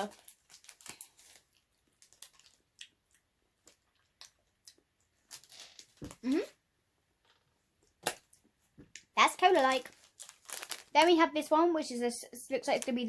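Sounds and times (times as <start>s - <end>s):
hard candy clicks and smacks: 7.8s - 9.1s.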